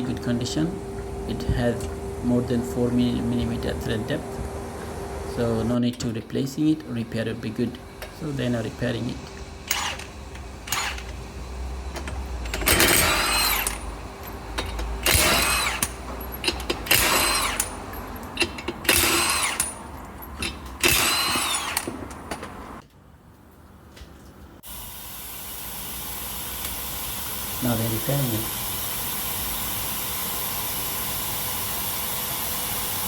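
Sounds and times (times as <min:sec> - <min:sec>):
power tool whining: 0:07.8 - 0:19.8, 0:20.4 - 0:22.1, 0:24.6 - 0:33.0.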